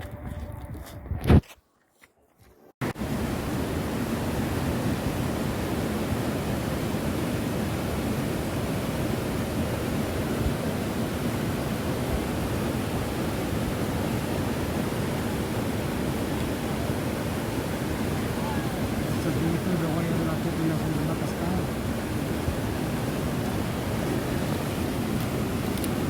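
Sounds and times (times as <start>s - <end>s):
waterfall rushing: 2.9s - 26.0s.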